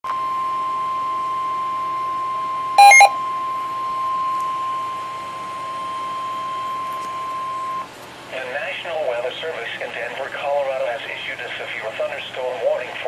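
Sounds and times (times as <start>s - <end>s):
short electronic beep: 2.8s - 3.1s
steady high-pitched alarm tone: 2.8s - 3.1s.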